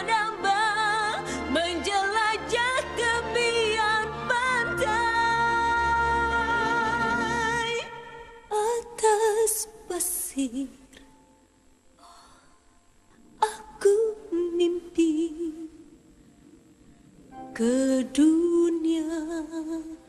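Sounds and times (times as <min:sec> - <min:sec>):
woman singing softly: 0:00.0 - 0:11.0, 0:13.4 - 0:16.0, 0:17.5 - 0:20.0.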